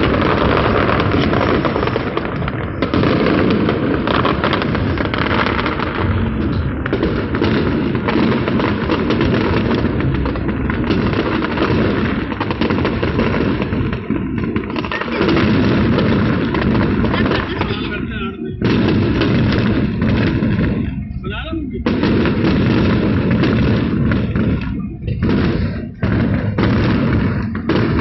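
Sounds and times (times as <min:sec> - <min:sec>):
fireworks bangs and crackling: 0:00.0 - 0:28.0.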